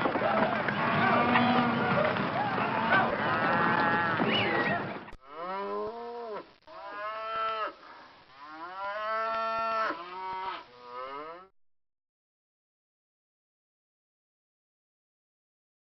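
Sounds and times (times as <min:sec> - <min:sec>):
cattle mooing: 0:00.7 - 0:04.5, 0:05.2 - 0:07.8, 0:08.4 - 0:11.5.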